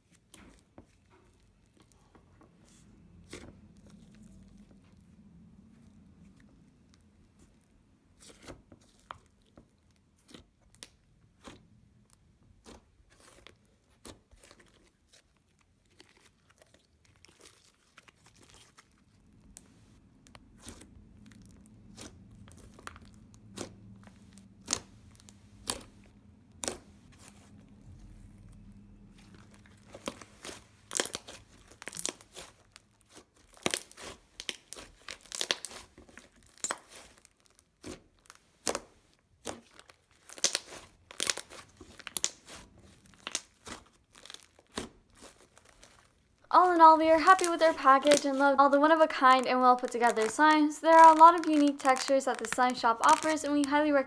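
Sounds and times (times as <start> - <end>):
slime squishing and popping: 20.2 - 27.2, 29.2 - 54.0.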